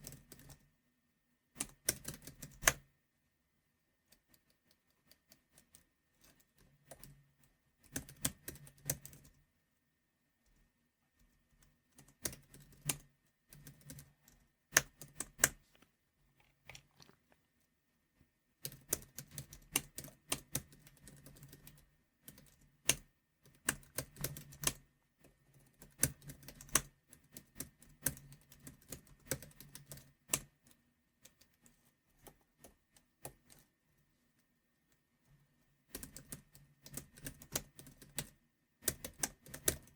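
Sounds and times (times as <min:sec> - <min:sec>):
typing on computer keyboard: 0:00.0 - 0:00.6, 0:01.6 - 0:02.8, 0:07.8 - 0:09.4, 0:11.2 - 0:15.6, 0:18.6 - 0:33.6, 0:35.9 - 0:39.9.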